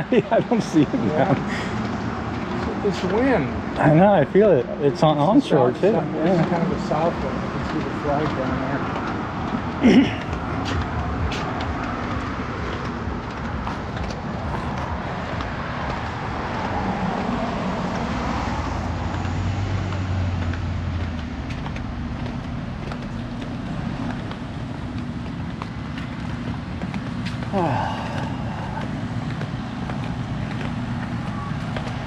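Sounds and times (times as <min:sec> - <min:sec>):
wind buffeting microphone: 0:08.8 - 0:19.2.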